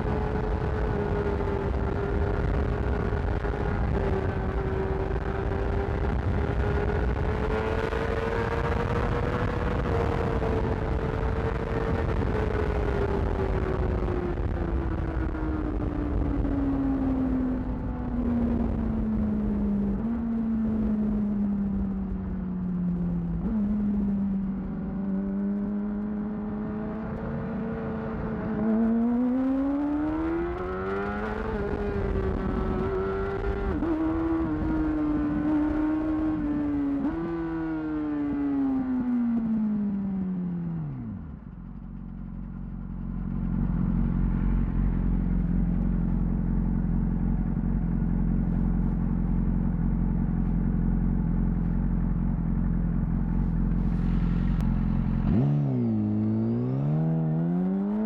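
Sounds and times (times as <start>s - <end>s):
motorcycle engine revving: 0.0s - 58.0s
motorcycle engine idling: 41.4s - 55.3s.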